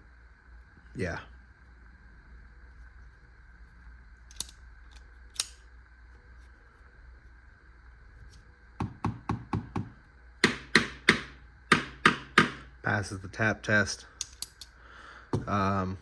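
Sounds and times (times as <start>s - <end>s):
pocket knife clicks: 4.3s - 5.6s, 14.2s - 14.7s.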